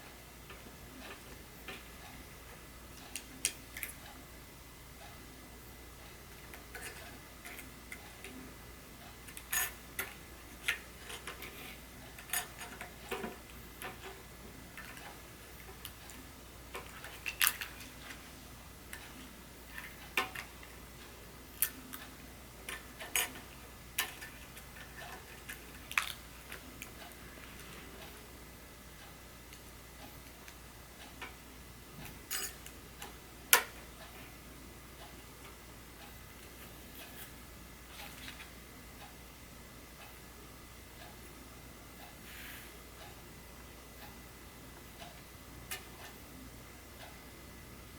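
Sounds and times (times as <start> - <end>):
small tools and phone parts clicking: 9.3 - 14.2, 16.7 - 17.9.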